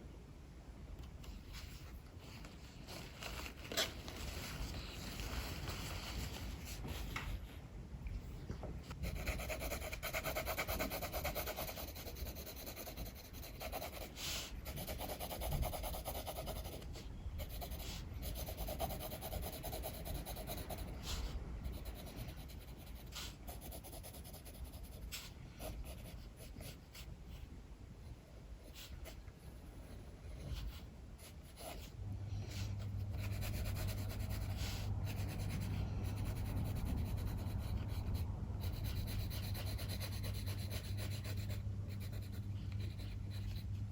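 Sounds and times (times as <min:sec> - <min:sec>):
steady low hum: 0:00.0 - 0:43.9
pencil sketching on paper: 0:09.0 - 0:27.1, 0:30.3 - 0:32.0, 0:32.6 - 0:43.8.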